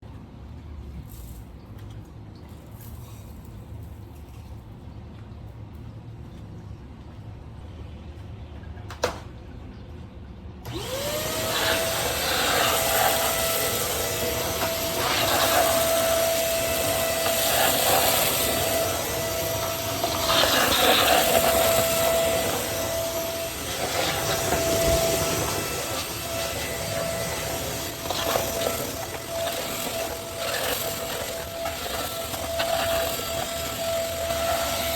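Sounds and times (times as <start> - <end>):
vacuum cleaner motor whine: 10.7 - 34.9.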